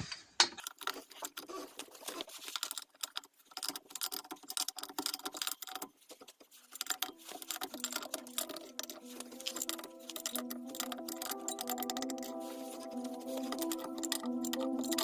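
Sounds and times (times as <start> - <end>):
wrench clicking on wheel bolts: 6.7 - 12.4
background music: 7.0 - 15.0.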